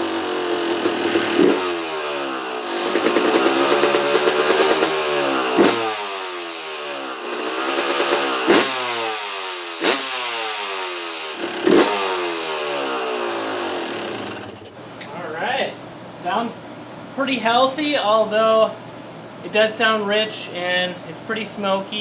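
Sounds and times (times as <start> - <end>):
dirt bike engine revving: 0.0 - 14.8.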